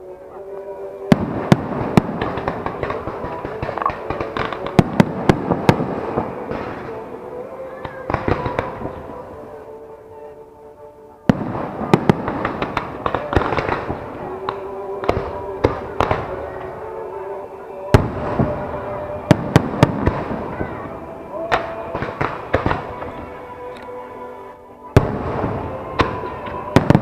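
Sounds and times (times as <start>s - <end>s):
fireworks bursting and crackling: 0.5s - 10.4s, 11.2s - 27.0s.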